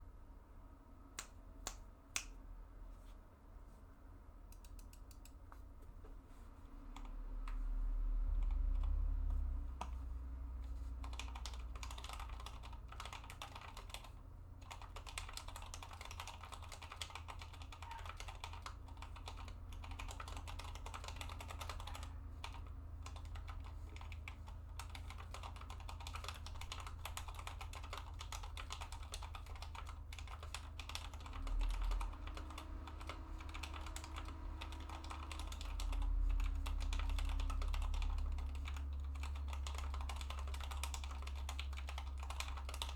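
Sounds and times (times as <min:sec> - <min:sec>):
mechanical keyboard typing: 0:08.3 - 0:10.0, 0:11.0 - 0:42.9.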